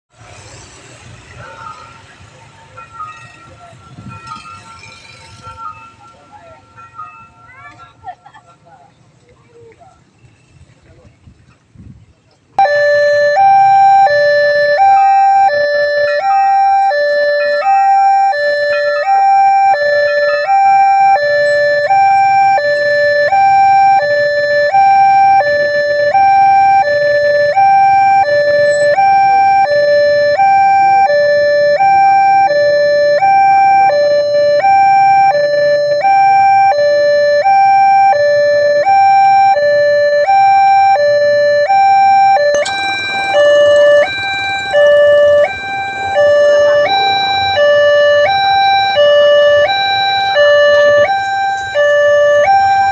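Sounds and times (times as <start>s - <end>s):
two-tone electronic warning alarm: 12.6s - 52.9s.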